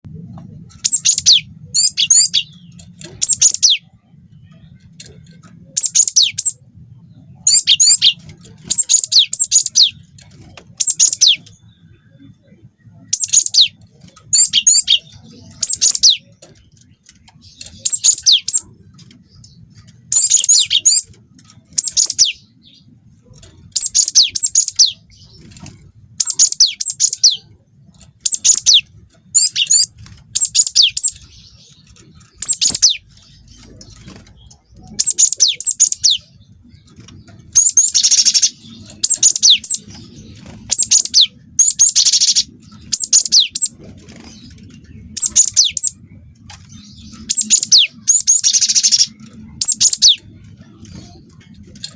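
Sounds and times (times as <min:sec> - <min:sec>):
bird singing high whistled notes: 0:23.7 - 0:25.1.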